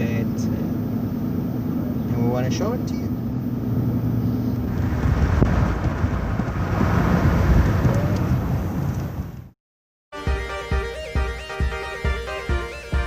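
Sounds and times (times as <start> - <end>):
road noise: 0.0 - 9.6.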